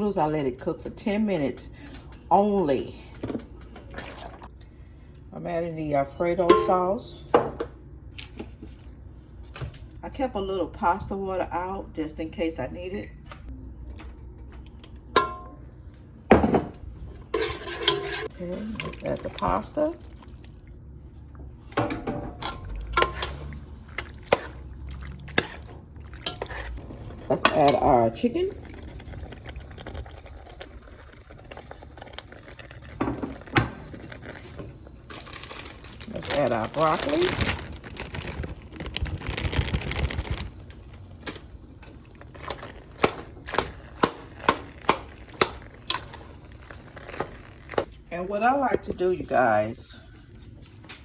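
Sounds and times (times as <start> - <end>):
utensil clinking against a pot: 15.1 - 15.6, 17.3 - 19.1, 21.8 - 28.0
broccoli rattling into pot: 32.5 - 40.6.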